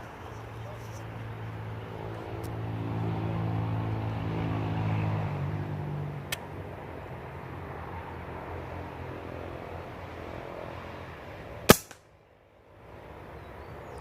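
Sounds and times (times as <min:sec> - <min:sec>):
air rifle firing: 0:11.7 - 0:12.0.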